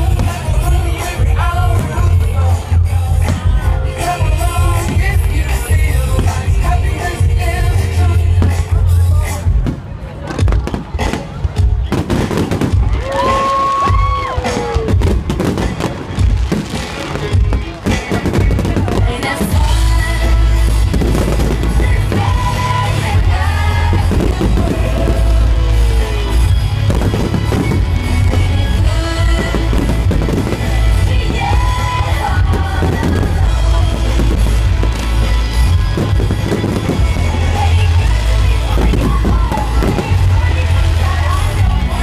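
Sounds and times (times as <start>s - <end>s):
fireworks bangs and crackling: 0.0s - 42.0s
loud music with singing: 0.0s - 42.0s.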